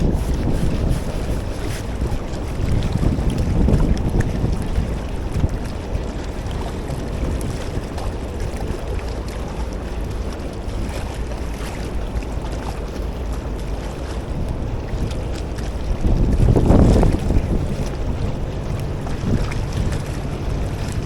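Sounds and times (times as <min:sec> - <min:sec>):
wind blowing across microphone: 0:00.0 - 0:21.0.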